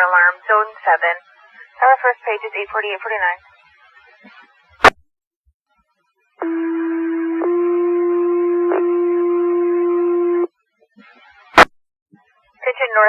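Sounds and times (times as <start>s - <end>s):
radio noise crack: 0.0s - 5.0s, 11.0s - 11.7s.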